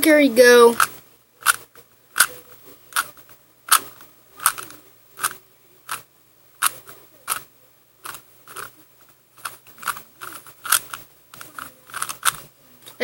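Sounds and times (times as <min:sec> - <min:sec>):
plastic puzzle cube clicking: 0:00.7 - 0:01.6, 0:02.2 - 0:06.0, 0:06.6 - 0:08.7, 0:09.4 - 0:12.4.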